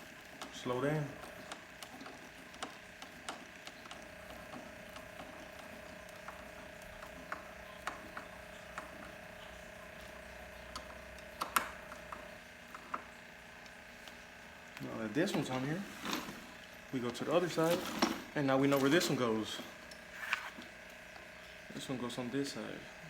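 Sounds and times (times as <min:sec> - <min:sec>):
parts being handled: 0:15.2 - 0:20.8.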